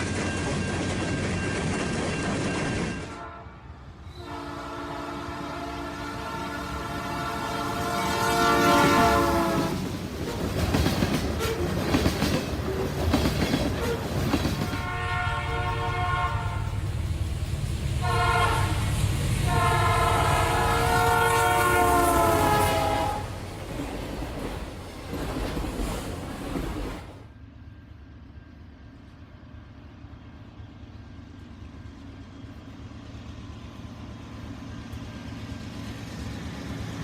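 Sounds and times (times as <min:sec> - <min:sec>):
train rumble and wheel clatter: 0:00.0 - 0:37.0
train air horn blasts: 0:03.1 - 0:09.9, 0:14.7 - 0:16.8, 0:18.0 - 0:23.4.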